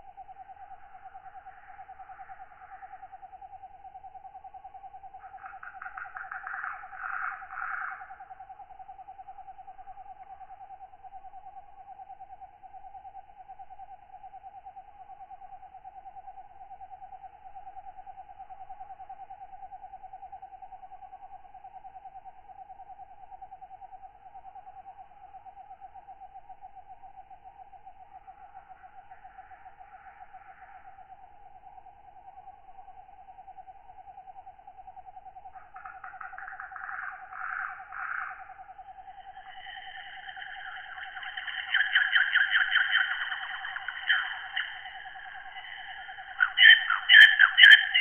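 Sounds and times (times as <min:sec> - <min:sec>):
insects trilling: 0:00.0 - 0:48.0
katydid rasping call: 0:35.6 - 0:48.0.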